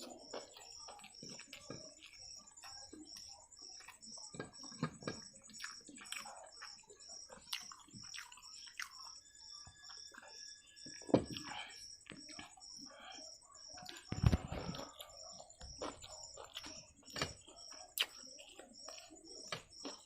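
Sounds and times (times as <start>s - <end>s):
wet chewing smacks: 0.0s - 9.2s, 13.8s - 20.0s.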